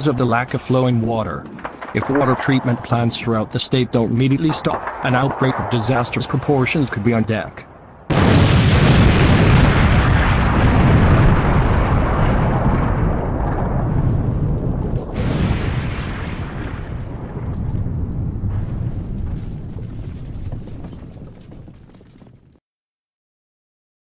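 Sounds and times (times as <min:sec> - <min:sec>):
explosion blast rumbling: 0:08.1 - 0:22.4.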